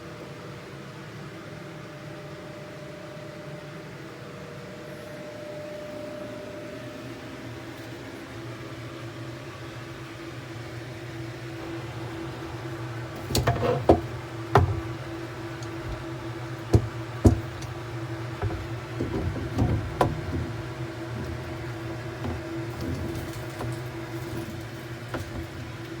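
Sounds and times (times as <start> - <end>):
steady low hum: 10.0 - 26.0
sharp knocks and clatters: 11.6 - 21.6.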